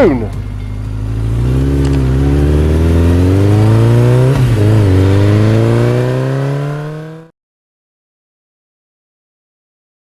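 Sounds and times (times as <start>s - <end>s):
motorcycle engine accelerating: 0.0s - 7.3s.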